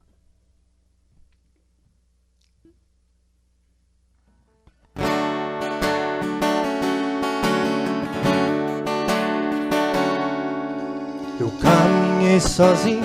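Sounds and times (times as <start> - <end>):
acoustic guitar strumming: 4.9 - 13.0.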